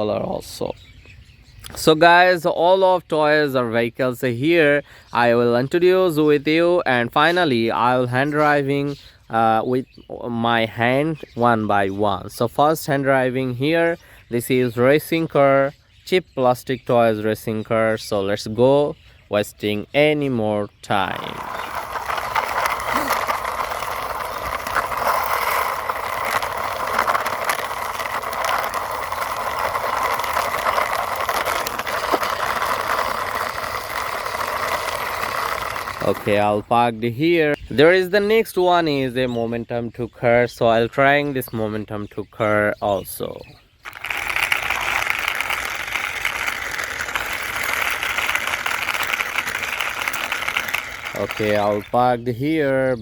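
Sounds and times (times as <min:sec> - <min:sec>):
plastic toy car wheels rattling: 0:20.9 - 0:36.7, 0:43.8 - 0:52.1.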